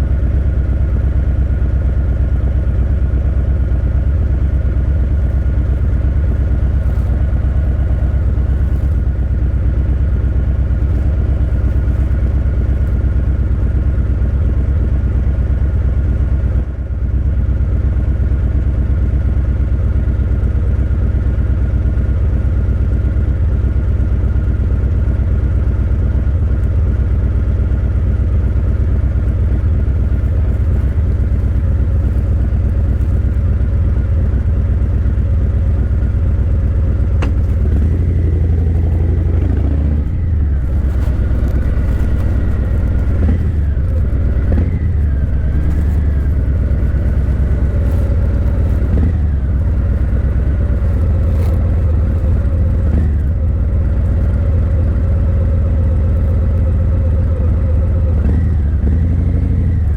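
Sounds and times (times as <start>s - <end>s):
motorcycle engine revving: 37.2s - 53.4s, 58.1s - 59.9s.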